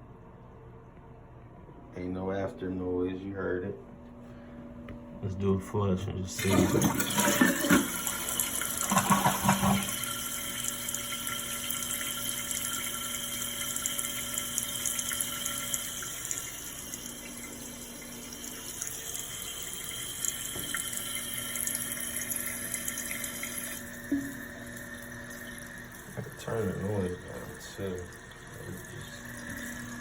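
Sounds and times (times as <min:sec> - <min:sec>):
toilet flushing: 0:06.3 - 0:30.0
toilet tank refilling hiss: 0:06.4 - 0:30.0.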